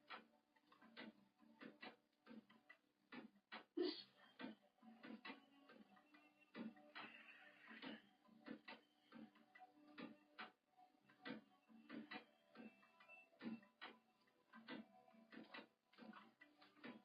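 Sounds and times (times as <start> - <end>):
faint clicks and taps: 0.0 - 17.0.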